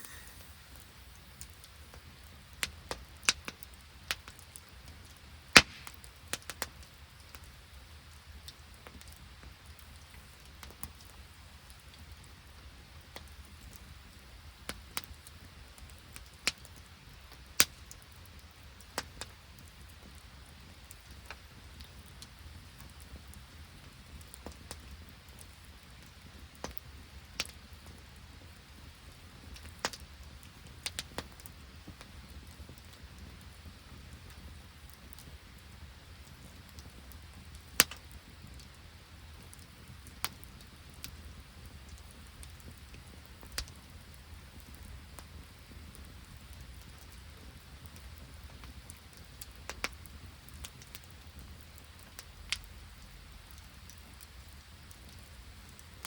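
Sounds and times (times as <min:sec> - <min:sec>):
campfire crackling and popping: 0:00.0 - 0:56.0.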